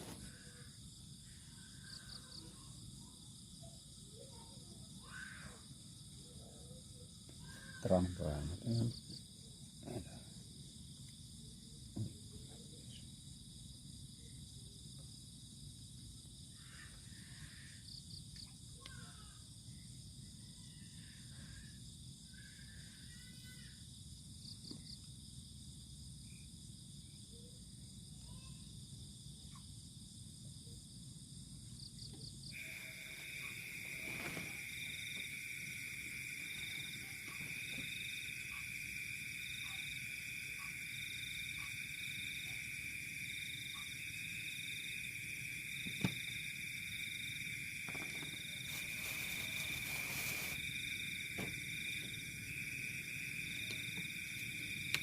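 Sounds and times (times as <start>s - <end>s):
insect pulsing call: 0.0s - 10.3s, 16.3s - 25.1s, 28.2s - 28.7s, 31.8s - 55.0s
night insects calling: 0.0s - 55.0s.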